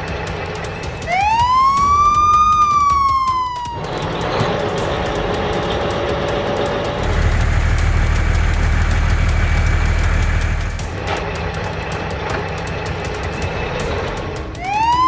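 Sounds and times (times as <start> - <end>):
steady low rumble: 0.0 - 14.7
siren wailing: 1.0 - 5.2, 14.5 - 15.0.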